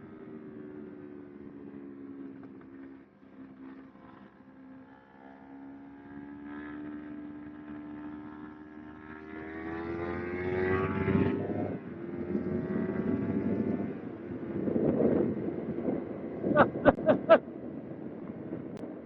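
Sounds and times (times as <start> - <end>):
motorcycle engine accelerating: 0.0 - 18.8
wind rush over microphone: 11.7 - 19.0.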